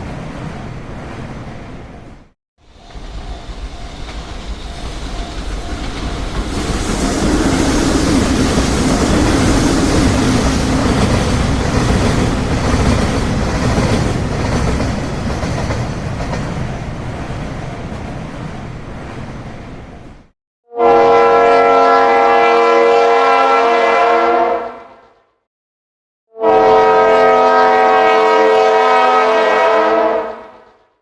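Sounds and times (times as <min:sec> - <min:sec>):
train rumbling along rails: 0:00.0 - 0:20.3.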